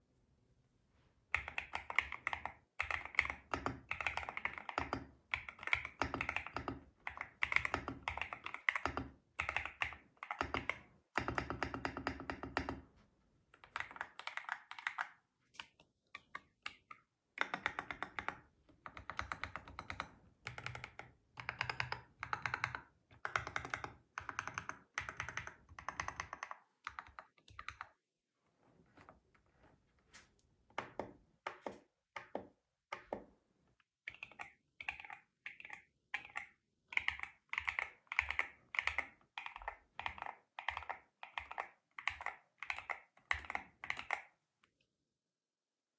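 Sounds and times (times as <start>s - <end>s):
mechanical keyboard typing: 1.3s - 12.8s, 13.6s - 15.2s, 16.2s - 28.0s, 34.1s - 44.4s.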